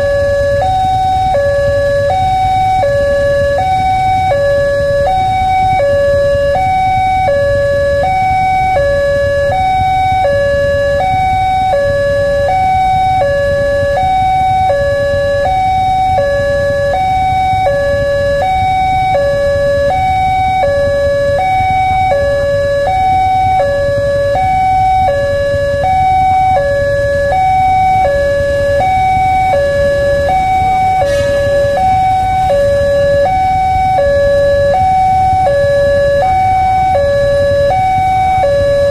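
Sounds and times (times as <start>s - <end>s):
two-tone warning siren: 0.0s - 38.9s
low rumble: 26.7s - 36.0s.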